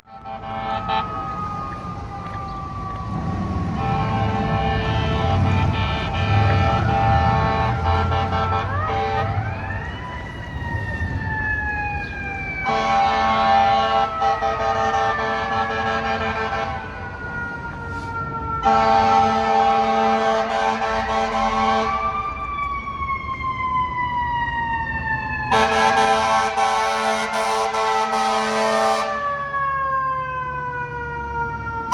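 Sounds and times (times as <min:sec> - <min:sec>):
fire truck air horn blasts: 0:00.0 - 0:01.6, 0:03.7 - 0:09.8, 0:12.6 - 0:22.3, 0:25.5 - 0:29.4
siren winding down: 0:00.1 - 0:31.9.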